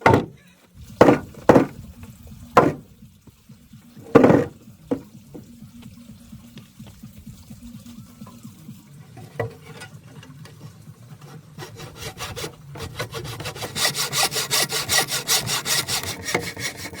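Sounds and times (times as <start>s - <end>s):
hand saw cutting wood: 2.6s - 2.8s, 11.2s - 17.0s.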